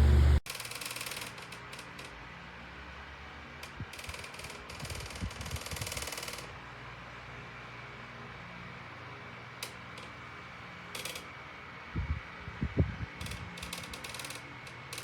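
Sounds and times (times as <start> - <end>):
electric fan running: 0.0 - 0.4, 3.7 - 15.0.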